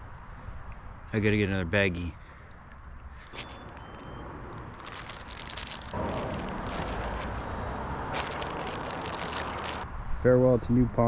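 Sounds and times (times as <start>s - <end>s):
plastic bag crinkling: 4.7s - 9.8s.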